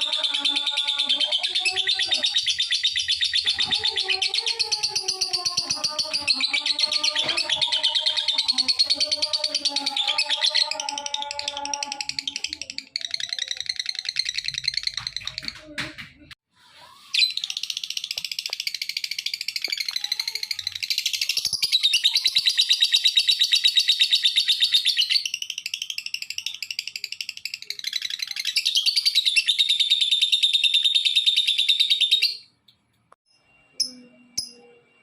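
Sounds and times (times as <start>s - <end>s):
lovebird chattering trills: 0.0s - 15.6s.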